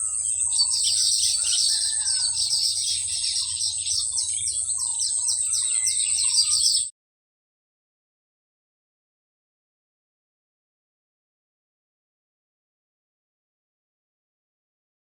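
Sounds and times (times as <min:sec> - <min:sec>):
high-pitched insect drone: 0:00.0 - 0:06.9
weaver birds chattering: 0:00.0 - 0:06.9.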